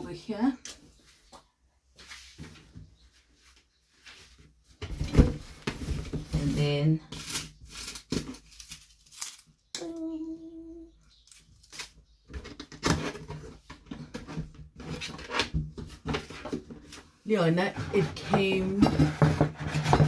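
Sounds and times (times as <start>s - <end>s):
person humming: 9.8s - 10.9s.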